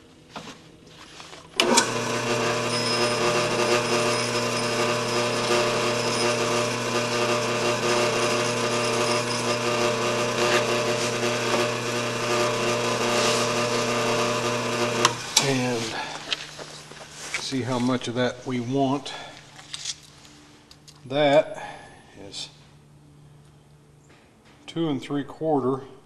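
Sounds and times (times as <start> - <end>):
drill press motor humming: 1.5 - 17.4
drill press switch click: 14.8 - 15.6.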